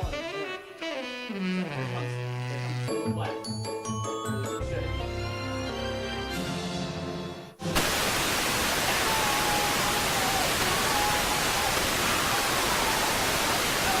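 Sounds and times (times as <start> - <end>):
television static hiss: 7.6 - 14.0.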